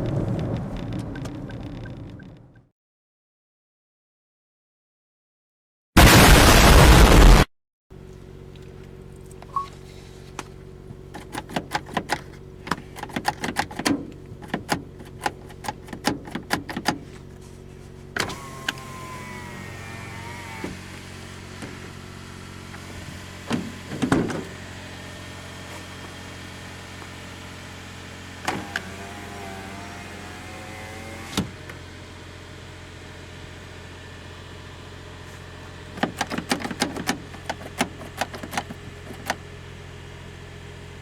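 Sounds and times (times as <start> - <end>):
car engine running: 6.0 - 41.0
irregular clicks and knocks: 11.1 - 17.0, 36.0 - 39.4.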